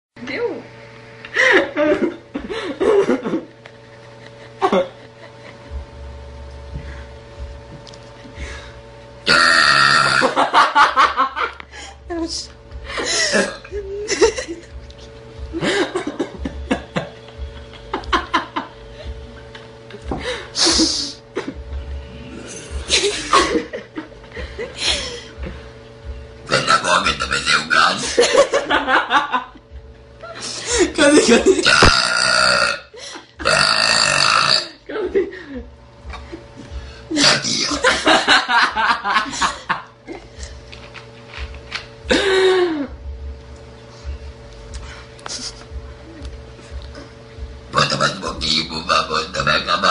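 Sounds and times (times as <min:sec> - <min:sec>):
girls laughing and giggling: 0:01.3 - 0:05.9, 0:10.2 - 0:12.3, 0:12.9 - 0:21.8, 0:22.7 - 0:25.7, 0:28.0 - 0:31.7, 0:34.8 - 0:40.3
girl burping loudly: 0:09.3 - 0:10.4, 0:31.6 - 0:34.8.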